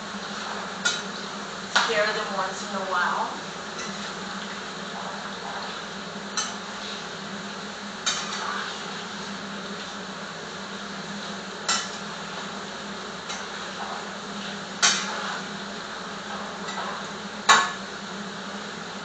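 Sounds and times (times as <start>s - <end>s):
utensil stirring food in a pot: 0.0s - 17.9s
steady hiss: 0.0s - 19.0s.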